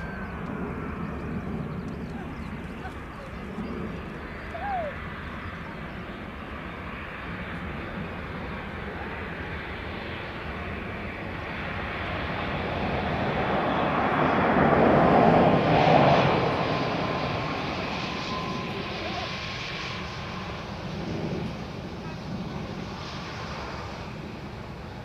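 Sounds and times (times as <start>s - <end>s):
aircraft engines passing: 0.0s - 25.0s.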